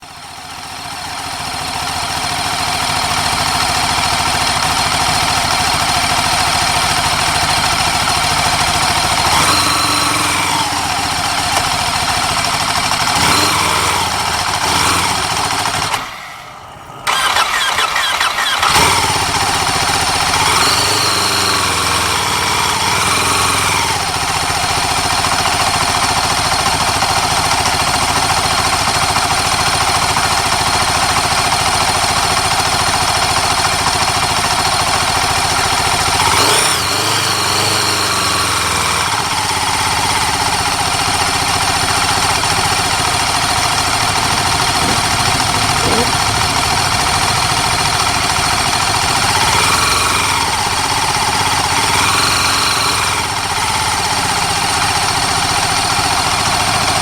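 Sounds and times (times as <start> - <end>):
racing motorcycle engine revving: 3.2 - 25.6, 35.1 - 57.0.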